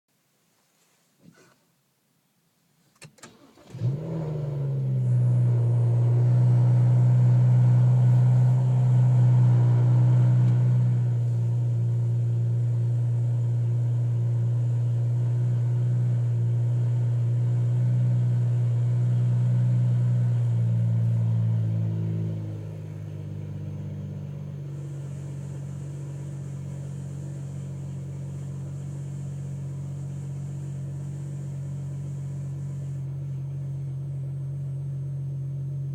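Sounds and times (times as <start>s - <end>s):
car engine starting and idling: 2.9s - 35.9s.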